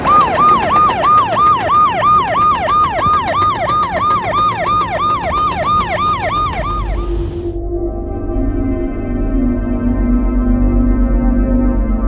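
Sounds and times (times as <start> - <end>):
siren in fast yelp: 0.0 - 7.3.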